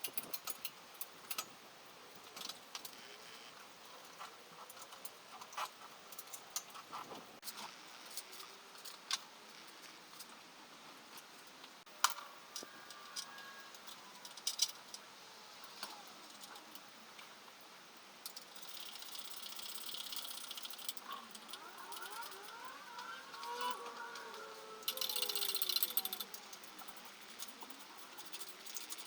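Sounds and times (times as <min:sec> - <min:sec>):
metal tools clinking: 0:18.4 - 0:29.0.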